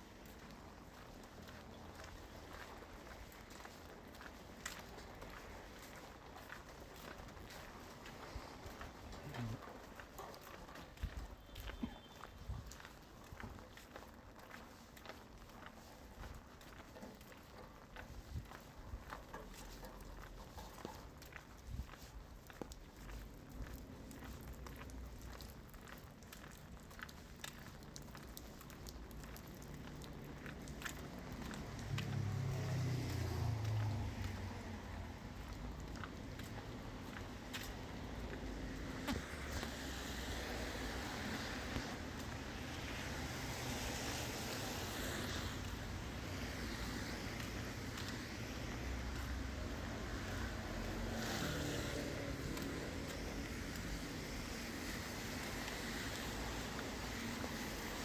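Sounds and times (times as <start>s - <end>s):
rain hissing: 38.8s - 58.0s.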